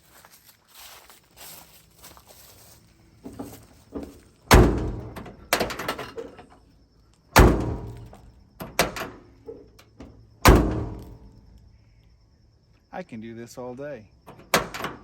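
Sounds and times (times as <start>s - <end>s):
truck door slamming: 3.2s - 6.4s, 7.4s - 11.3s, 14.3s - 15.0s
door handle and latch knocks: 7.4s - 9.6s, 14.3s - 15.0s.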